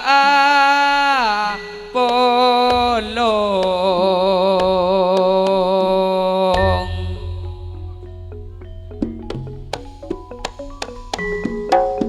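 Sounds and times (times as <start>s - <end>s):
wavering sliding melody: 1.2s - 12.0s
light percussion hits: 1.6s - 12.0s
low drone: 2.7s - 11.1s.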